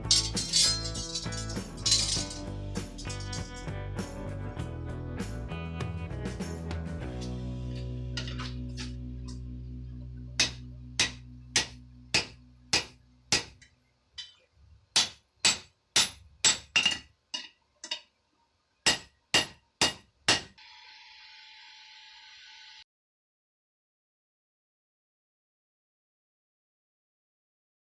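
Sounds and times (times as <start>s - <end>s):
hammer striking iron on anvil: 0.0s - 2.4s, 8.2s - 8.9s, 10.4s - 13.6s, 15.0s - 18.0s, 18.9s - 20.5s.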